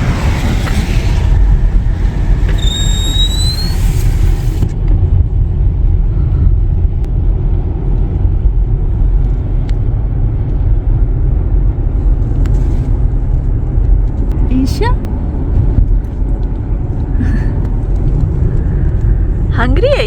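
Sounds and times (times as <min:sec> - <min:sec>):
high rising squeal: 0:00.0 - 0:04.6
car interior rumble: 0:00.0 - 0:20.0.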